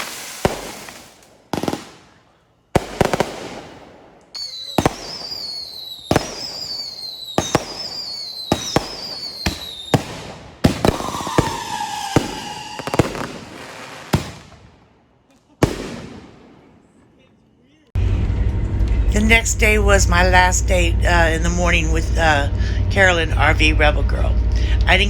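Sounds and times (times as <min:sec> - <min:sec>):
firework bangs: 0:00.0 - 0:02.2, 0:02.8 - 0:14.9, 0:15.6 - 0:17.1
firework crackle: 0:00.0 - 0:02.2, 0:02.8 - 0:14.6
whistling fireworks: 0:00.0 - 0:17.3.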